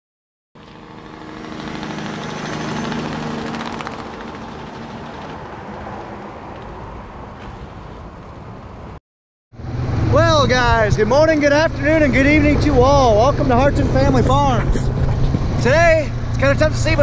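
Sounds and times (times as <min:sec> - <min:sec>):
vehicle engine running: 0:00.6 - 0:05.7.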